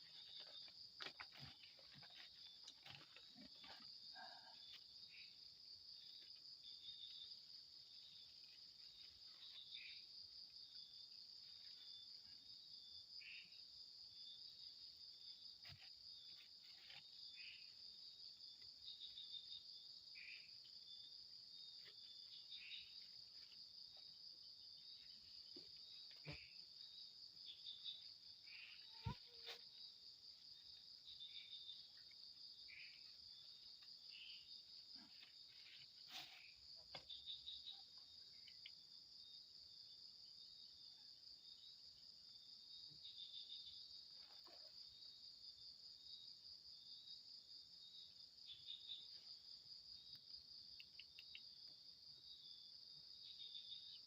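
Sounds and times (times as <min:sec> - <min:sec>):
crickets trilling: 0:00.0 - 0:54.0
short insect calls: 0:00.0 - 0:54.0
broken insect trill: 0:15.4 - 0:39.7.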